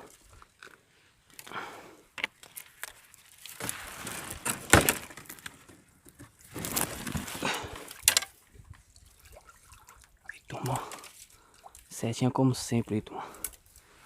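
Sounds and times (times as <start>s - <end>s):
rustling and scraping: 2.2s - 8.8s.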